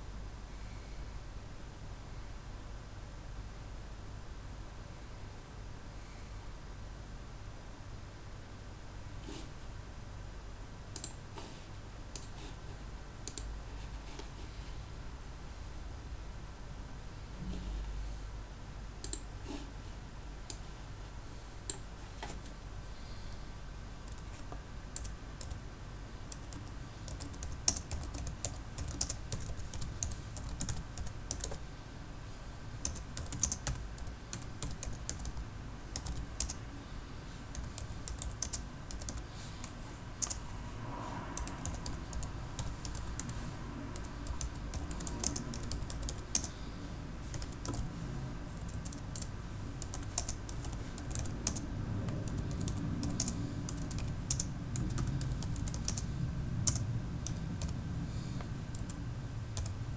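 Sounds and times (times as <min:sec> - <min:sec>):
low steady hum: 0:00.0 - 0:59.9
typing on keyboard: 0:24.1 - 0:25.6, 0:26.3 - 0:31.6, 0:32.8 - 0:36.6, 0:37.5 - 0:39.2, 0:40.2 - 0:40.4, 0:41.4 - 0:43.4, 0:44.0 - 0:46.6, 0:47.3 - 0:47.9, 0:48.6 - 0:57.8, 0:58.7 - 0:59.0, 0:59.6 - 0:59.8.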